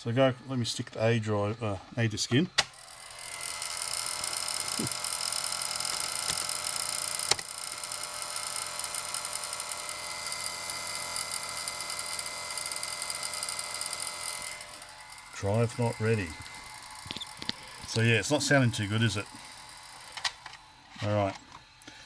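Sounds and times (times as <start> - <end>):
floppy drive whirring and grinding: 2.4 - 21.8
floppy drive click: 2.6 - 2.8, 5.8 - 7.5, 19.4 - 20.6.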